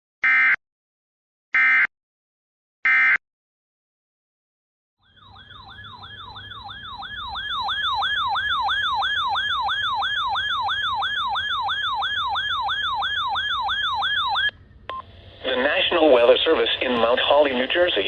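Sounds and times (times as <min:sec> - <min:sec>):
electronic siren yelping: 0:05.0 - 0:14.5.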